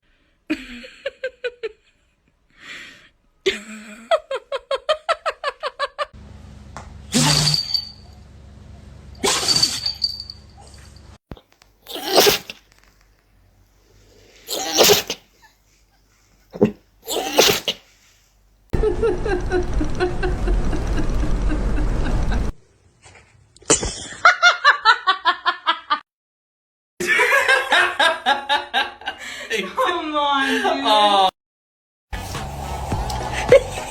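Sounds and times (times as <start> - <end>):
person sneezing: 11.8 - 12.6, 14.5 - 15.3, 16.6 - 17.9
person laughing: 18.8 - 22.5, 33.4 - 33.9.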